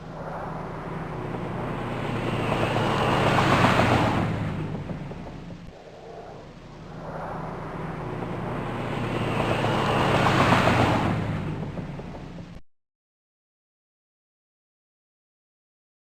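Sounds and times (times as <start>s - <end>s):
car driving past: 0.0s - 12.4s.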